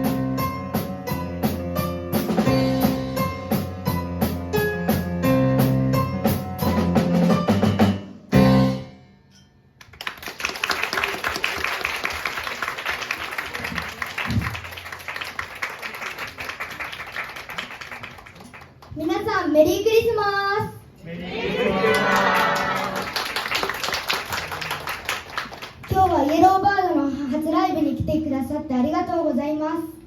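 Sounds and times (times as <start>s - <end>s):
live drum and keyboard song: 0.0s - 9.2s
audience applause: 9.9s - 18.9s, 21.4s - 25.9s.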